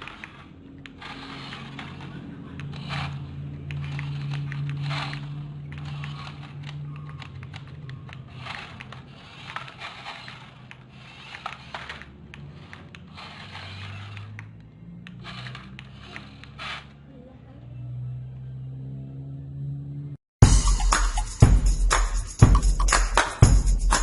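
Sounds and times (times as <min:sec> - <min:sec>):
hard plastic clattering and scraping: 0:00.0 - 0:14.5.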